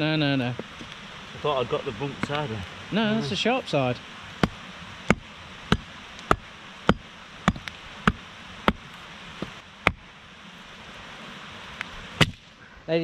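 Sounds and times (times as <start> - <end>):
hatchet chopping logs: 4.4 - 10.1, 12.2 - 12.5.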